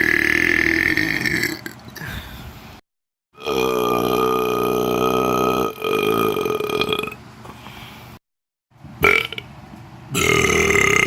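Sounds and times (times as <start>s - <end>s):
person burping: 0.0s - 2.1s, 3.4s - 7.2s, 9.0s - 9.4s, 10.2s - 11.0s.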